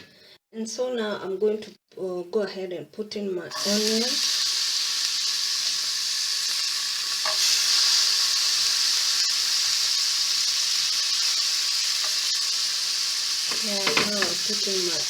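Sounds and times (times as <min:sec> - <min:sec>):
onion sizzling in a pan: 0:03.5 - 0:15.0.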